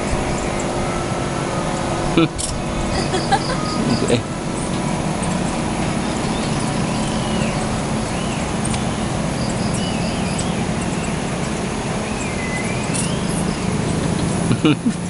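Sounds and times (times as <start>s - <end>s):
low rumble with hiss: 0.0s - 15.0s
warbling bird calls: 0.0s - 15.0s.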